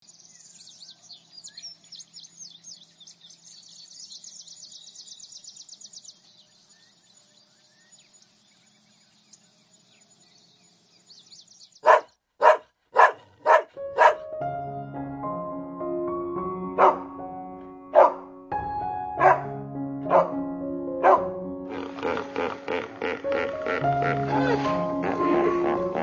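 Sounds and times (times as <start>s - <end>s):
birds chirping: 0.0s - 14.2s, 16.8s - 17.2s, 17.9s - 18.4s, 19.2s - 19.5s, 20.1s - 20.4s, 21.0s - 23.6s
dog barking: 11.8s - 14.3s, 16.8s - 17.1s, 17.9s - 18.3s, 19.2s - 19.5s, 20.1s - 20.4s, 21.0s - 21.4s
music: 13.7s - 26.0s.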